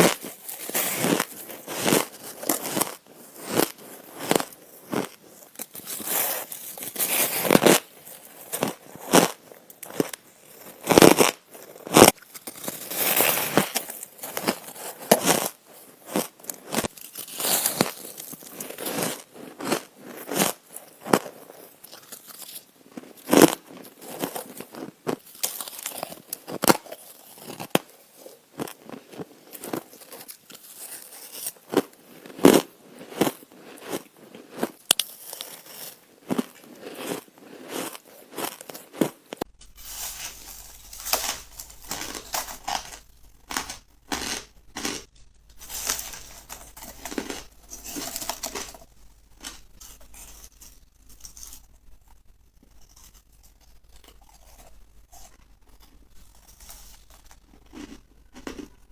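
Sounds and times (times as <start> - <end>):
ice crunching between teeth: 0.0 - 58.9.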